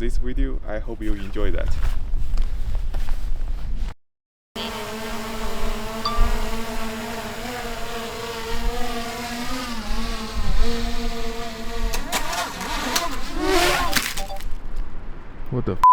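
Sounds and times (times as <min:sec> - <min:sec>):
motor humming: 0:04.6 - 0:14.5.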